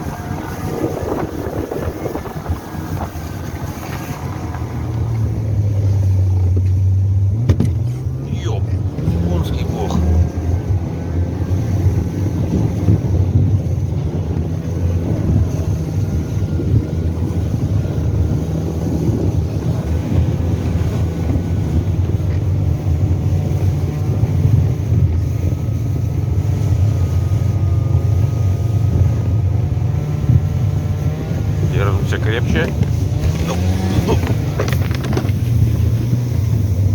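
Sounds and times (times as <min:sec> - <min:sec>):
wind buffeting microphone: 0:00.0 - 0:09.3, 0:10.0 - 0:36.9
vehicle engine running: 0:00.0 - 0:36.9.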